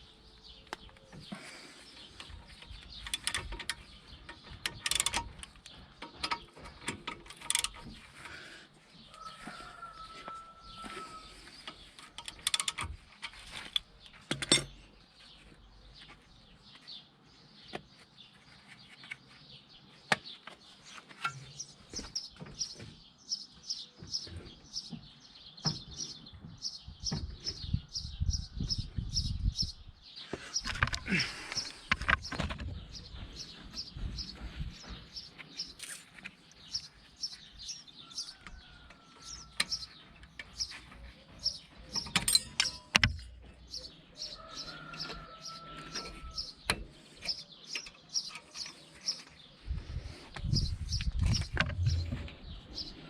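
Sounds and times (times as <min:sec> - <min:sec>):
small birds chirping: 0:00.0 - 0:53.0
sharp clicks and knocks: 0:02.1 - 0:08.0, 0:39.5 - 0:43.8, 0:50.4 - 0:52.5.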